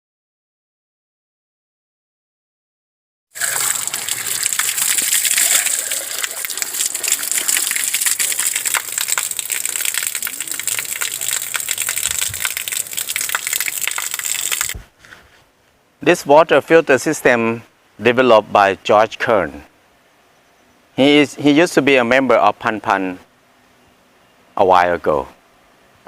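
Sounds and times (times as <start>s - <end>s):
water gushing and splashing: 3.4s - 14.8s.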